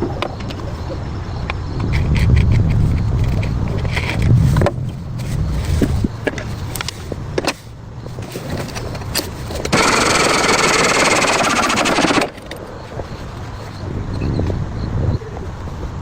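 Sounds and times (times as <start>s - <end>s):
power tool running: 9.7s - 12.4s.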